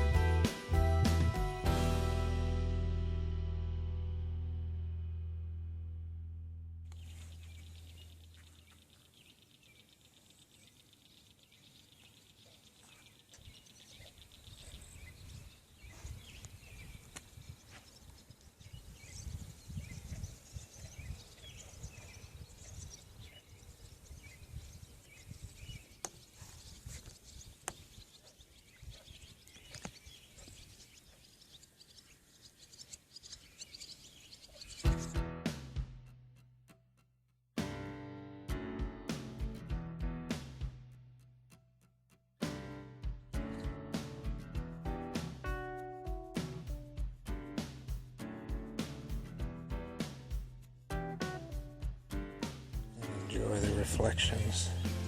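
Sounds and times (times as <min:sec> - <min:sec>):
small birds chirping: 0:06.9 - 0:35.3, 0:43.4 - 0:44.4, 0:50.5 - 0:55.0.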